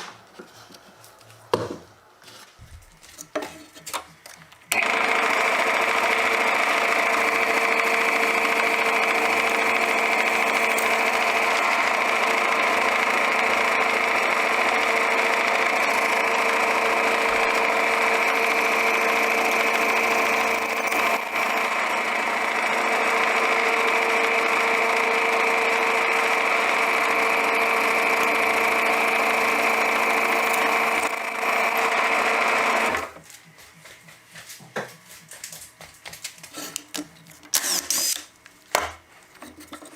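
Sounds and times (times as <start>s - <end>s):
small power tool motor running: 4.7s - 33.2s, 37.6s - 38.2s.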